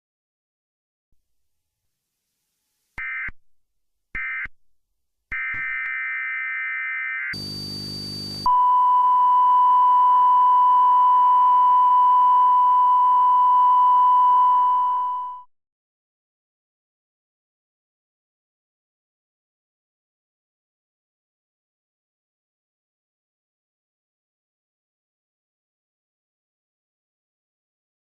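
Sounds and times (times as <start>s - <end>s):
harsh static with high whistle: 3.0s - 3.4s, 4.2s - 4.5s, 5.3s - 8.8s.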